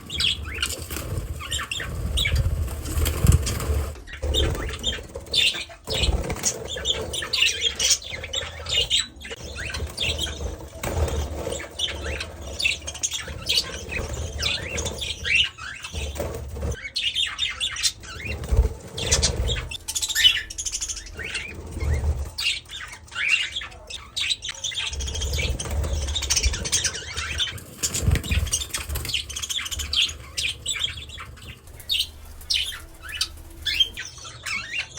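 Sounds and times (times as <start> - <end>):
wings flapping: 0.0 - 16.8, 18.0 - 22.8, 24.9 - 34.1
budgerigar chirping: 19.0 - 25.5, 26.5 - 34.9.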